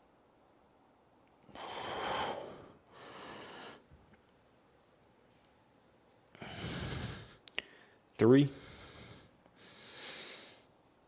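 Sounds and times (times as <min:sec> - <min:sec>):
man breathing: 0:01.5 - 0:04.0, 0:06.3 - 0:10.8.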